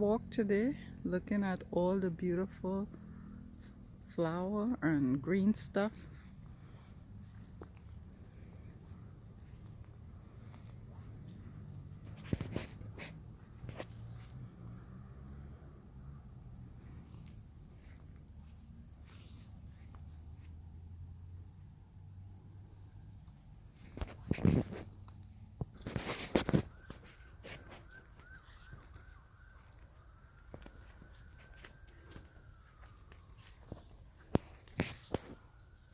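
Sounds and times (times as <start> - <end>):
insects trilling: 0.0 - 35.9.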